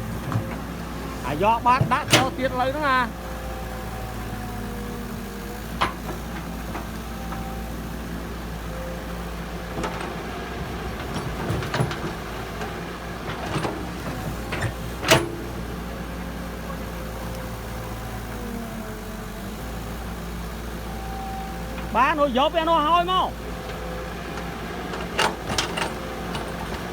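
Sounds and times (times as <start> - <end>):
diesel excavator running: 0.0 - 26.9
knocks and clanks: 1.6 - 2.6, 9.8 - 15.5, 24.4 - 26.9.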